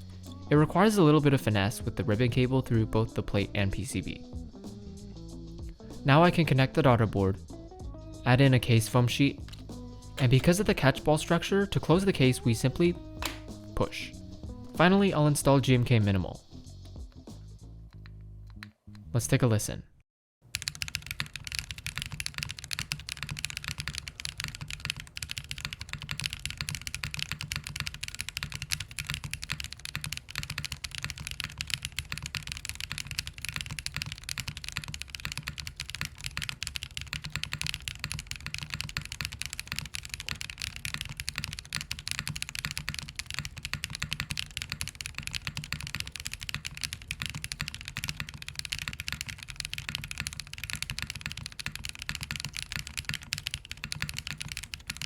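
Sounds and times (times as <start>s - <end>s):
fast mechanical keyboard typing: 20.5s - 55.0s.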